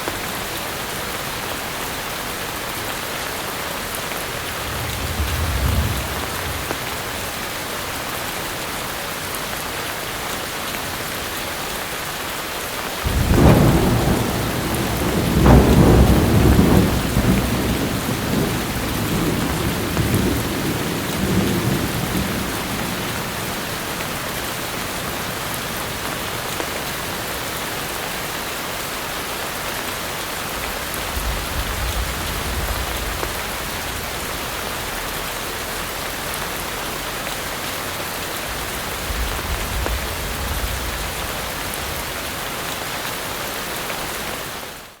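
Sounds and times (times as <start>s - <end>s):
heavy rain: 0.0s - 45.0s
thunderclap with low rumble: 4.0s - 8.1s, 13.0s - 26.9s, 30.6s - 36.2s, 37.8s - 42.5s.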